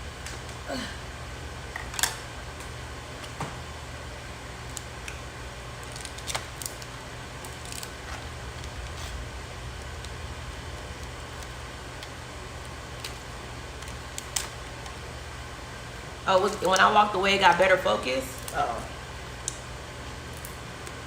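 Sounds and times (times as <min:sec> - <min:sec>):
steady low hum: 0:00.0 - 0:21.0
crab shells cracking: 0:04.7 - 0:09.0, 0:10.9 - 0:15.0.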